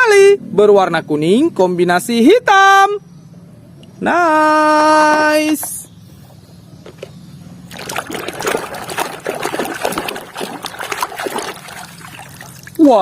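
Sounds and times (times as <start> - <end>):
water splashing and trickling: 7.7 - 13.0.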